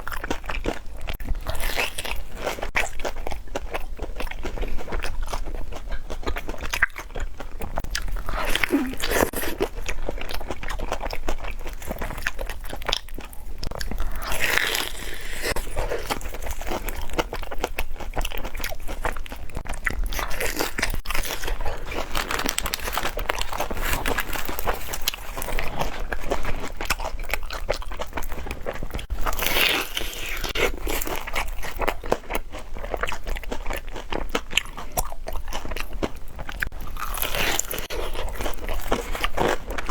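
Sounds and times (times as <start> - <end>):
chewing: 0.0 - 39.9
crunchy biting: 7.8 - 10.5.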